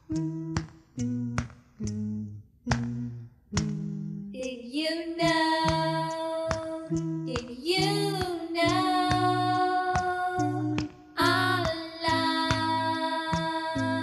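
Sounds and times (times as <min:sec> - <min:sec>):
low bass notes: 0:00.0 - 0:04.4, 0:05.2 - 0:14.0
plucked acoustic guitar: 0:00.0 - 0:04.5, 0:05.2 - 0:14.0
woman singing: 0:04.4 - 0:14.0.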